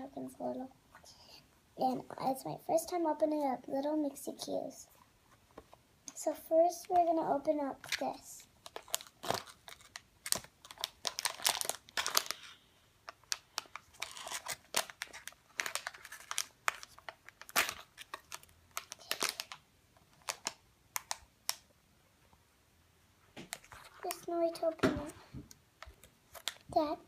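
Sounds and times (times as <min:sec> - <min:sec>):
plastic packaging crackling: 0:07.8 - 0:21.7, 0:23.4 - 0:26.9.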